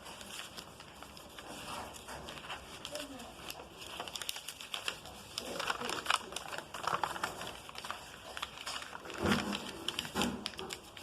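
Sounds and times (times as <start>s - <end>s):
paper crackling as folded: 0.0s - 11.0s.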